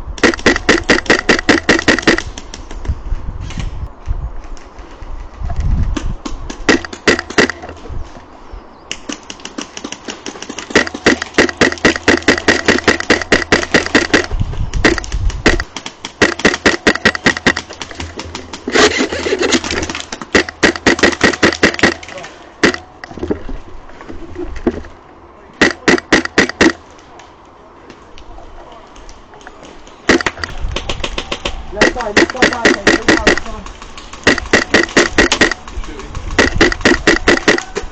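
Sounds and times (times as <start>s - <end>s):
airsoft guns firing full-auto: 0.2s - 2.2s, 9.0s - 17.7s, 18.7s - 22.8s, 25.6s - 26.8s, 30.1s - 37.7s.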